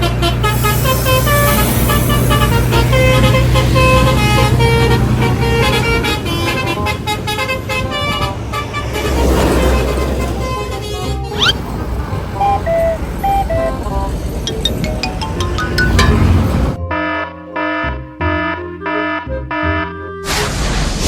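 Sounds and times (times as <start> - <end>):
engine hum: 0.0 - 16.8
bus horn playing a tune: 0.0 - 17.7, 18.4 - 20.0.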